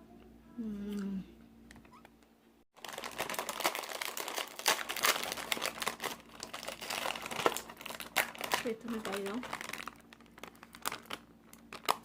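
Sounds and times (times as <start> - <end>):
plastic wrapper crinkling: 2.8 - 12.0.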